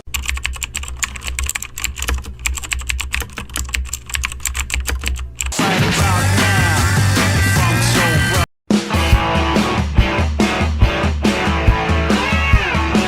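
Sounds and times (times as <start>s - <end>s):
typing on keyboard: 0.0s - 5.6s
loud rock music: 5.6s - 13.0s.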